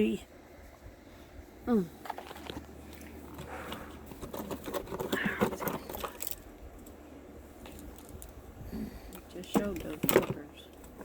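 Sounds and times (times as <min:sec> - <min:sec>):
objects rummaged in a bin: 0:01.9 - 0:06.5.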